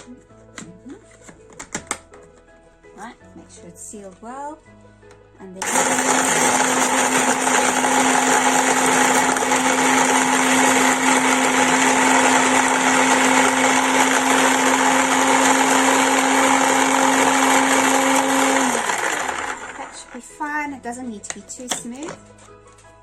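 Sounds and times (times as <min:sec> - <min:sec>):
electric blender running: 0:05.6 - 0:20.2.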